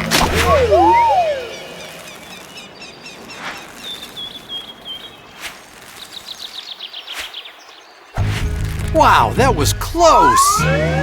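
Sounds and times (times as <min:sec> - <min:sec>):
steady hiss: 0:00.0 - 0:07.6
birds chirping: 0:00.0 - 0:11.0.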